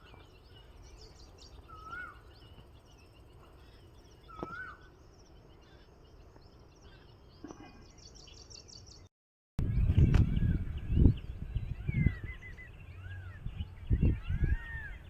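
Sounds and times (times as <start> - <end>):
small birds chirping: 0.0 - 15.0
whistled bird call: 1.7 - 2.4, 4.3 - 4.9.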